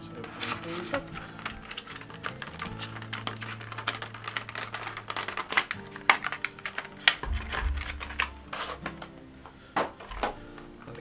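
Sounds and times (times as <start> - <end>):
plastic crackling and clicking: 0.0 - 11.0
dull bump: 7.0 - 10.6.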